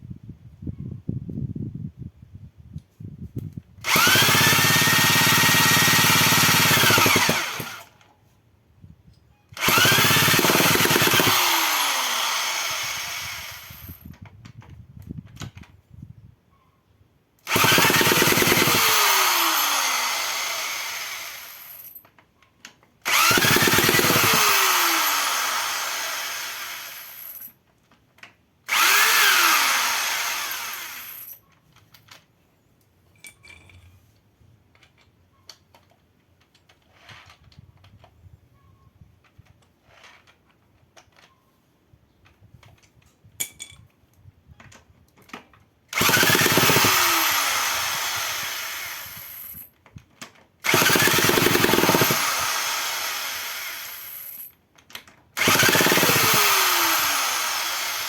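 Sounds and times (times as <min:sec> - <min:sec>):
power tool whining: 0:03.8 - 0:08.0, 0:09.6 - 0:14.1, 0:17.4 - 0:22.0, 0:23.0 - 0:27.4, 0:28.7 - 0:31.4, 0:45.9 - 0:49.6, 0:50.6 - 0:54.4, 0:55.4 - 0:58.0.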